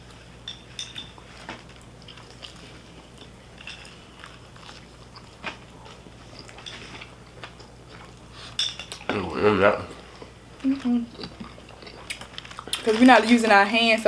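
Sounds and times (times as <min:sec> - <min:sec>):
low steady hum: 0:00.0 - 0:14.0
chewing and biting food: 0:01.1 - 0:09.4, 0:10.1 - 0:13.0.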